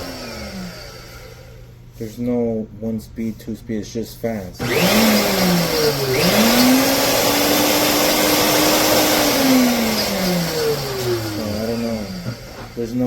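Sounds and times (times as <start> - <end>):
electric grain mill motor whir: 0.0 - 1.7, 4.6 - 13.0.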